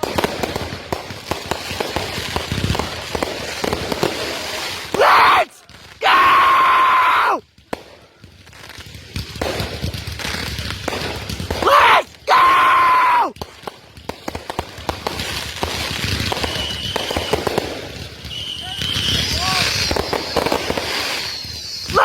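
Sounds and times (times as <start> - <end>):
fireworks crackling and popping: 0.0 - 22.0
person shouting: 4.9 - 7.4, 11.6 - 13.3.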